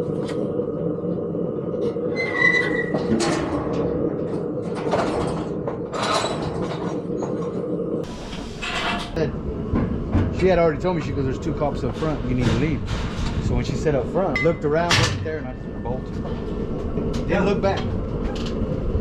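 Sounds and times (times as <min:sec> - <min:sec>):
rattles and clatters: 0:02.9 - 0:19.0
vehicle rumbling: 0:08.0 - 0:19.0.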